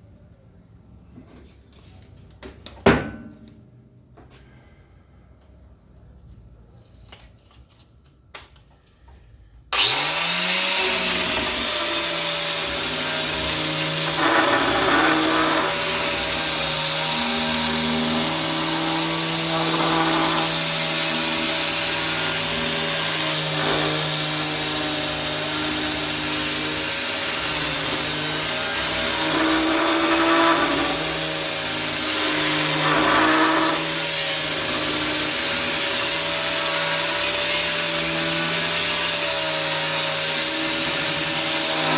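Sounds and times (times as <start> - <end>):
power sander on wood: 9.8 - 41.9.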